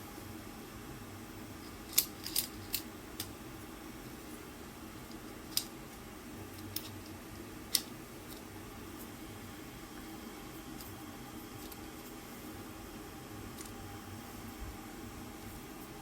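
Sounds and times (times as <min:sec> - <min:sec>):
steady low hum: 0:00.0 - 0:16.0.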